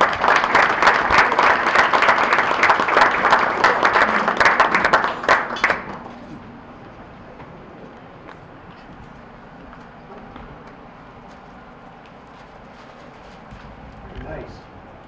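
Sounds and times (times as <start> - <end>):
audience applauding: 0.0 - 6.3
low room chatter: 0.0 - 15.0.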